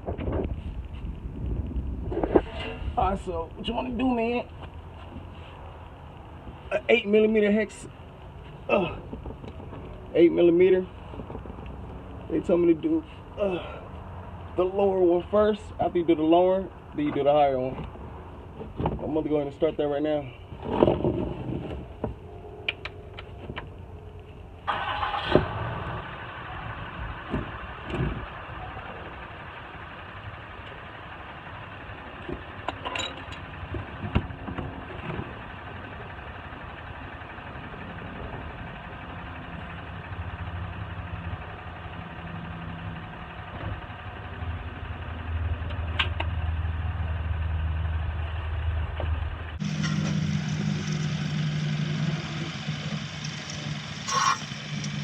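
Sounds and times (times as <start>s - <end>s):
vehicle engine running: 21.3s - 55.0s
deep steady hum: 49.5s - 55.0s.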